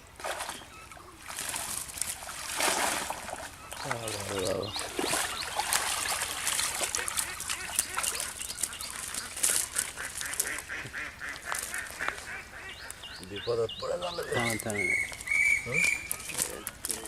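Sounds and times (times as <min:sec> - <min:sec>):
splashes: 0:00.0 - 0:12.1
birds calling: 0:00.0 - 0:17.0.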